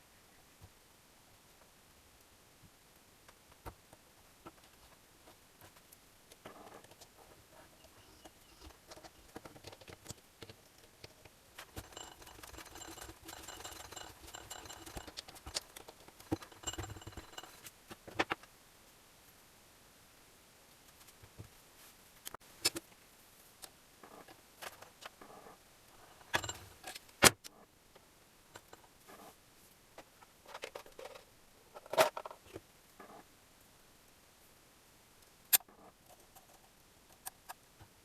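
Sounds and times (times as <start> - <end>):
rapid clicking: 8.2 - 17.7
metal parts clinking: 11.6 - 17.7.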